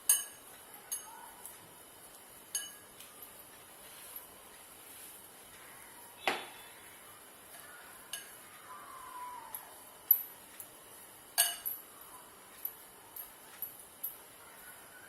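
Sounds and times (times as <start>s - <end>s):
utensils clinking against bowl: 0.0s - 1.1s, 2.5s - 2.9s, 8.1s - 8.4s, 11.4s - 11.8s.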